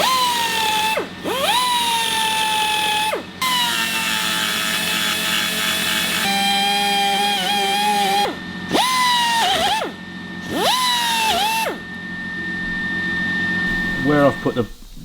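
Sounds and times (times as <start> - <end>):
rotary grinder whining: 0.0 - 15.0.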